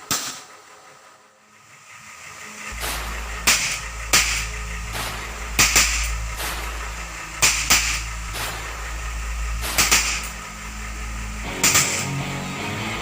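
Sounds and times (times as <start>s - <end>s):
steady low hum: 0.0s - 13.0s
air pistol firing: 0.1s - 0.4s, 2.8s - 6.7s, 7.4s - 8.8s, 9.6s - 10.4s, 11.5s - 12.2s.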